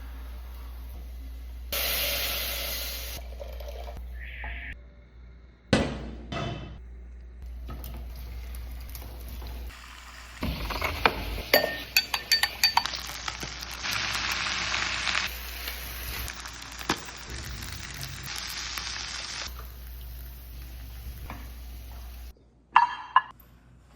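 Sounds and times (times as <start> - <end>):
food sizzling in frying pan: 1.7 - 3.9, 7.6 - 22.3.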